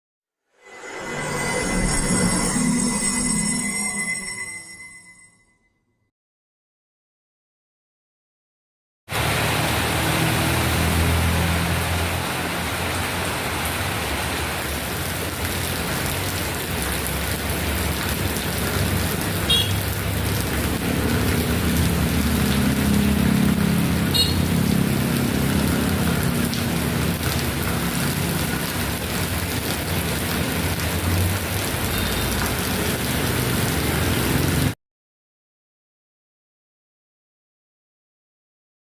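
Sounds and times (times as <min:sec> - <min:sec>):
vehicle engines humming: 0:09.1 - 0:34.7
heavy rain on a road: 0:09.1 - 0:34.8.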